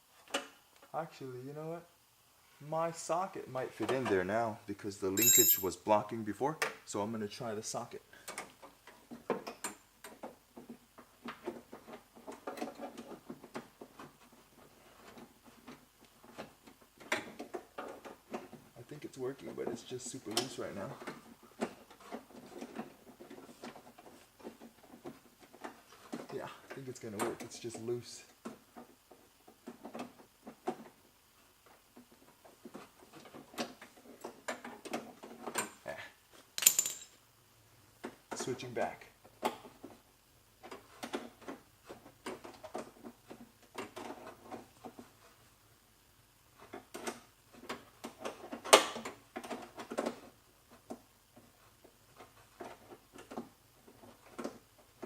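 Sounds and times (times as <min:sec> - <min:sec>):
sharp metallic clatter: 0:05.2 - 0:05.8.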